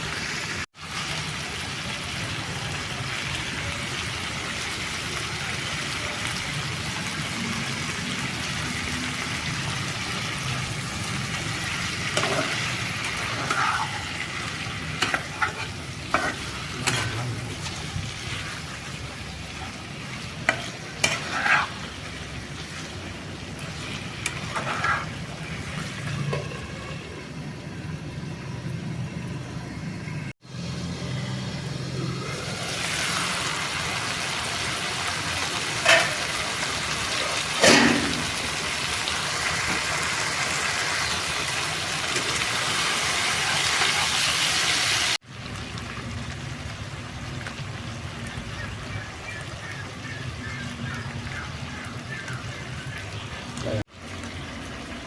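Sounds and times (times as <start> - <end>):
chicken sizzling in a pan: 0.0 - 28.8, 29.8 - 55.0
spatula scraping a pan: 11.8 - 27.1.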